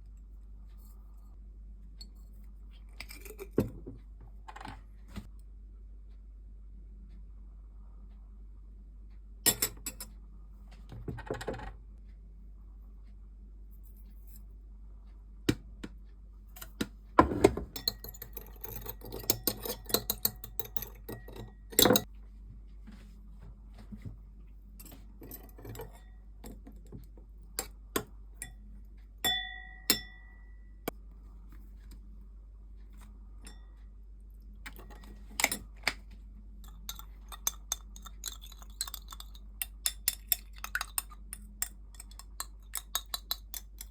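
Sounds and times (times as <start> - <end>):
utensils and dishes clinking: 17.7 - 22.1, 36.6 - 43.9
ringing ping: 29.2 - 30.8.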